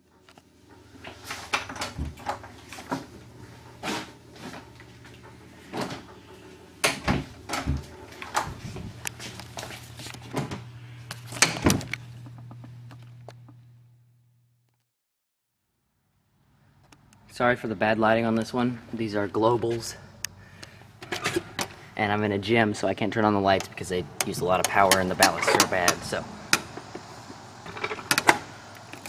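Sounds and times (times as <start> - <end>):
steady low hum: 0.0 - 14.6.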